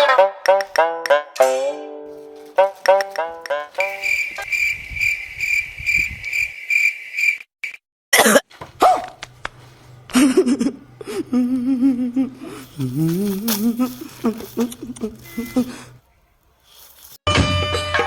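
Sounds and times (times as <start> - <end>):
cricket chirping: 3.8 - 7.4
short rough coughing bursts: 8.1 - 9.2
wavering vocal sound: 10.7 - 16.0.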